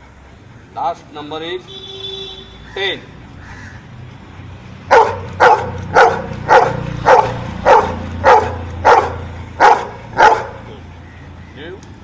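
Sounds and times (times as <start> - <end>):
dog barking: 4.9 - 10.6.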